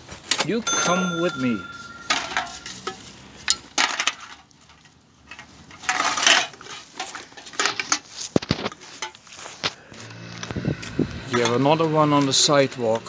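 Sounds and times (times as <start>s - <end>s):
cans and bottles clinking: 0.4s - 3.0s.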